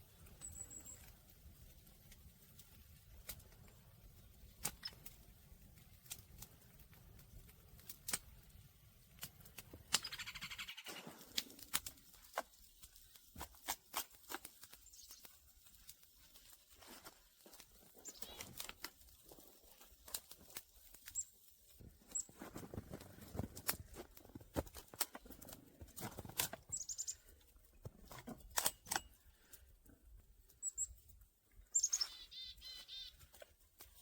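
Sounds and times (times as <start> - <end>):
twigs snapping and crackling: 0.1 - 10.3, 10.9 - 29.7, 32.9 - 34.0
short bird call: 31.8 - 33.2.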